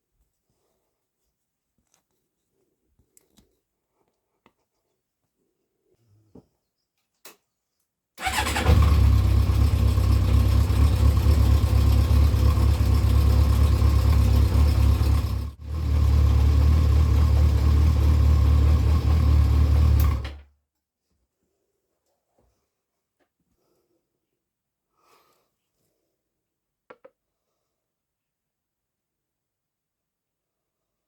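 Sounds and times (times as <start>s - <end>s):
motorcycle engine running: 8.6s - 20.0s.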